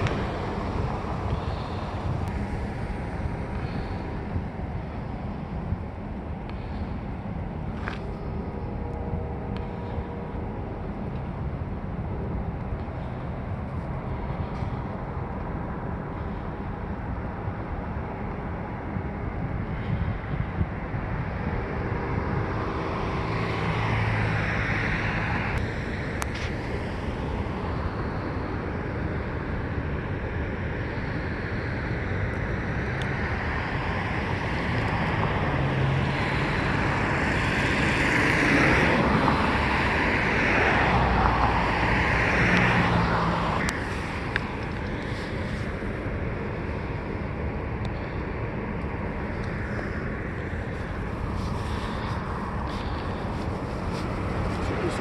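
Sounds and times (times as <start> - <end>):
steady low traffic rumble: 0.0 - 55.0
vehicles passing on street: 0.0 - 55.0.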